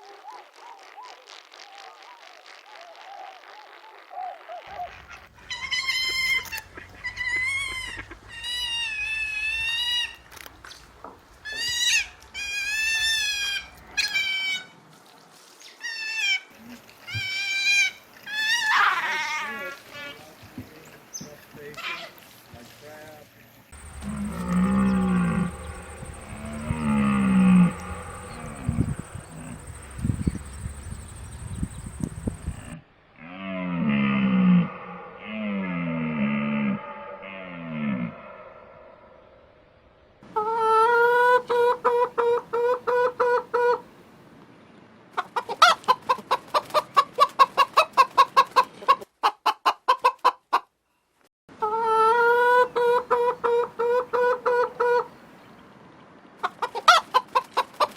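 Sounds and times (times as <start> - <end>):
large animal low calls: 23.8 - 31.5, 32.3 - 39.2
steady high-pitched tone: 23.8 - 32.8
chicken clucking: 45.2 - 50.7, 51.6 - 55.1, 56.4 - 57.9.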